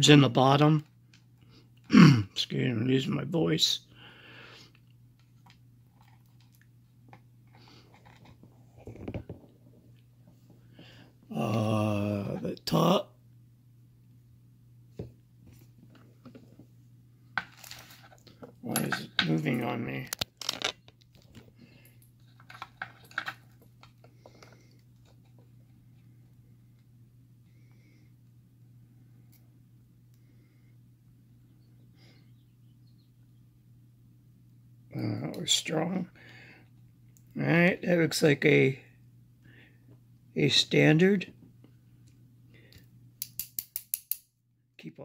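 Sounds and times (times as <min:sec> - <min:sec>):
lock pins clicking: 0:43.2 - 0:44.3
tweezers handling noise: 0:43.2 - 0:44.3.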